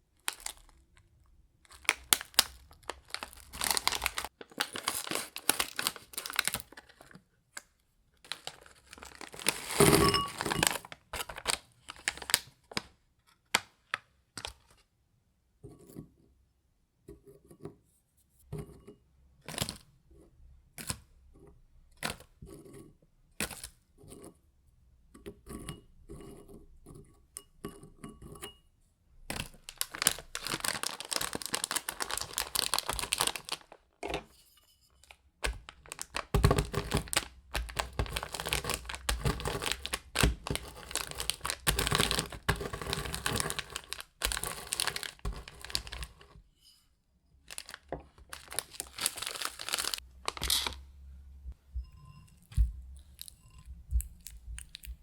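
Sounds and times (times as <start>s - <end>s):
packaging crinkling and tearing: 0.2s - 0.8s, 1.6s - 12.9s, 29.4s - 33.9s, 35.4s - 46.3s, 47.5s - 50.8s.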